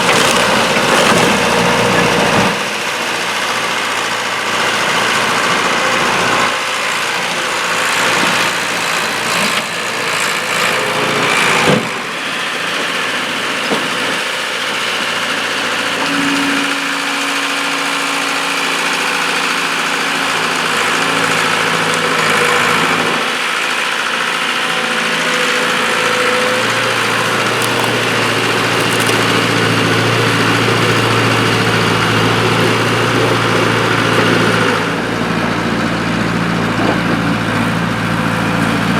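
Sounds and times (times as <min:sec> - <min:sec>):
skid-steer loader engine running: 0:00.0 - 0:38.9.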